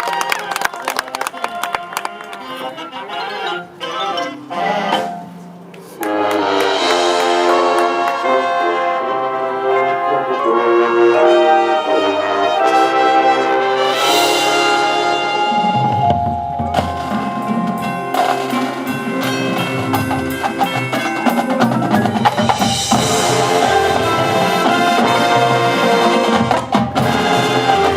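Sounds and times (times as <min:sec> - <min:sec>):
marching band brass chords: 0:01.4 - 0:27.9
drums playing rhythmic passage: 0:06.0 - 0:08.3, 0:13.8 - 0:27.9.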